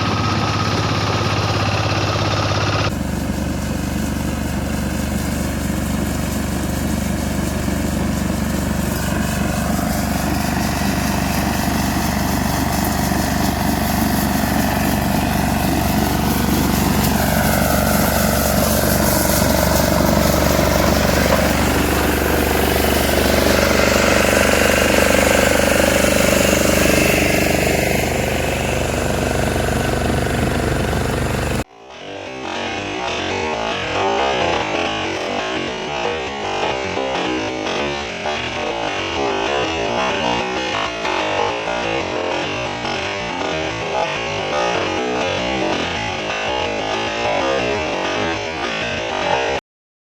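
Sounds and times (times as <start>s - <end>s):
tractor engine running: 0.0s - 31.6s.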